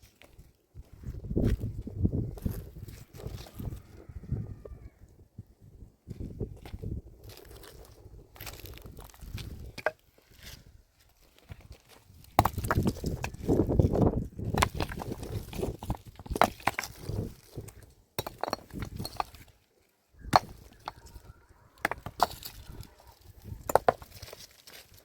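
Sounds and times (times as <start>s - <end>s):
stone scraping and crunching: 0.0s - 3.9s, 6.6s - 25.0s
stone knocking on stone: 18.2s - 19.4s, 20.3s - 22.8s, 23.6s - 24.2s.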